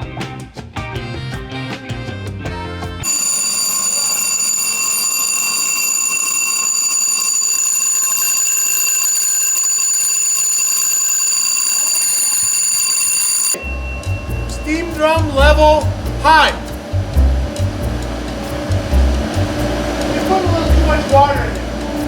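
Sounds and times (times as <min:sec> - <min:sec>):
alarm steady tone: 0:03.0 - 0:16.8.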